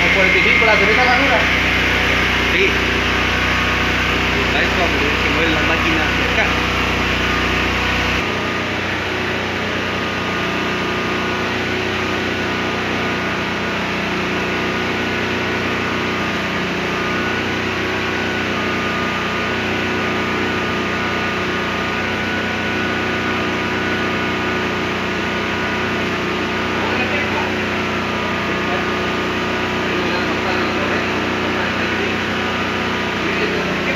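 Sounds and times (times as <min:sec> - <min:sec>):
deep low hum: 0:00.0 - 0:08.3
cutting machine whining: 0:00.0 - 0:33.9.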